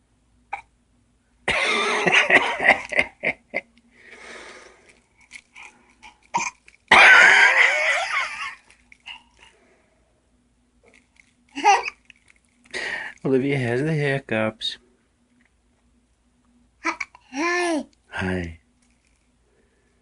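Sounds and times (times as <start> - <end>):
child hiccuping: 0.5 - 0.7, 6.3 - 7.4, 16.8 - 17.7.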